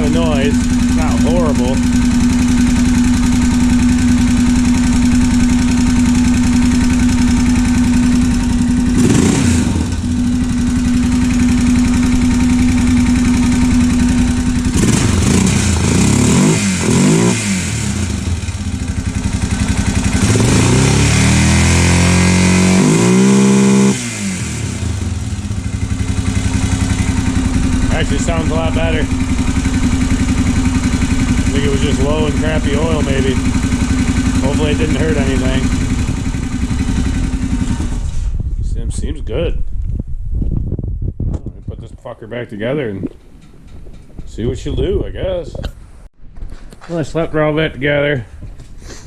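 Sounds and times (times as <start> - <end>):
motorcycle engine idling and revving: 0.0 - 38.6.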